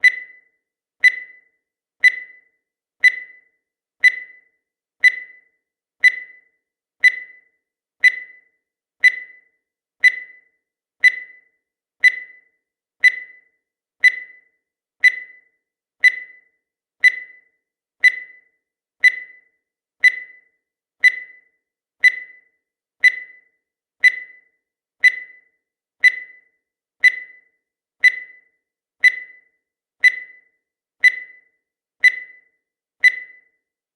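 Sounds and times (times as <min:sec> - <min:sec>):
short electronic beeps: 0:00.0 - 0:33.6.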